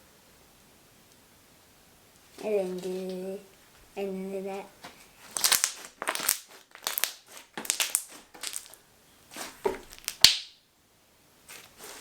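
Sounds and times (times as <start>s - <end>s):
slime squishing: 5.2s - 8.8s
slime popping: 5.3s - 8.8s, 9.7s - 10.6s.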